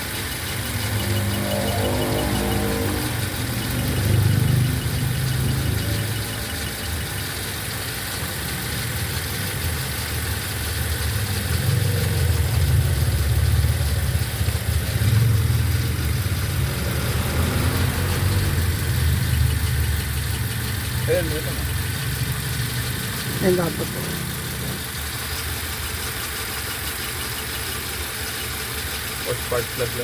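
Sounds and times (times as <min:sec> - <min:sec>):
car engine idling: 0:00.0 - 0:30.0.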